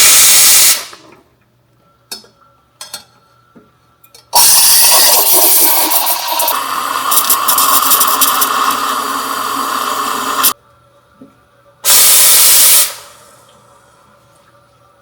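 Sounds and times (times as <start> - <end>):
steam wand hissing: 0.0 - 0.9, 4.4 - 10.6, 11.8 - 13.3.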